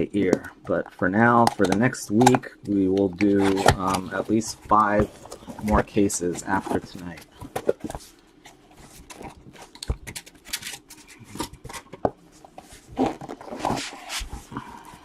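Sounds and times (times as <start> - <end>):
cardboard boxes being handled: 3.2 - 15.0.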